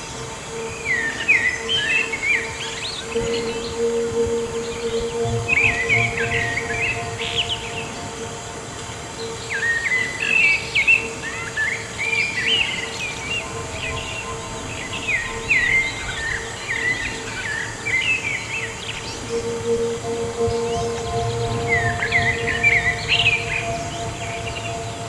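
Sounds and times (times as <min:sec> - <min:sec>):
steady low hum: 0:03.1 - 0:09.5, 0:19.3 - 0:25.0.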